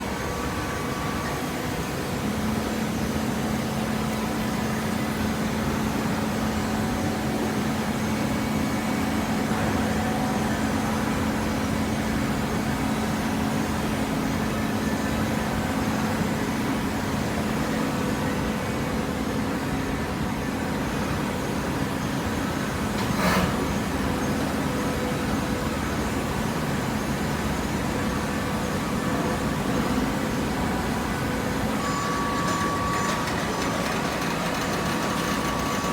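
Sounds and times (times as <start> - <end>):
baler mechanical drone: 22.2 - 35.9.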